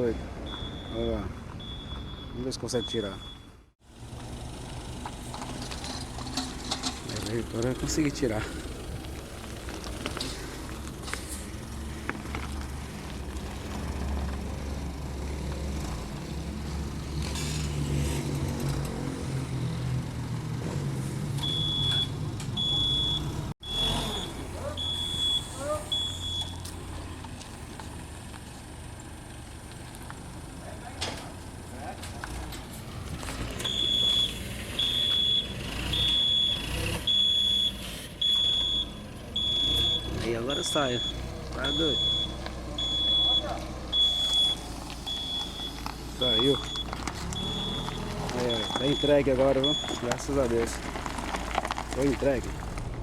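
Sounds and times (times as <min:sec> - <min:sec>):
reversing alarm beeps: 0:00.0 - 0:03.7, 0:21.4 - 0:26.6, 0:33.6 - 0:45.8, 0:46.4 - 0:47.9, 0:48.6 - 0:50.0
forklift engine running: 0:03.2 - 0:53.0.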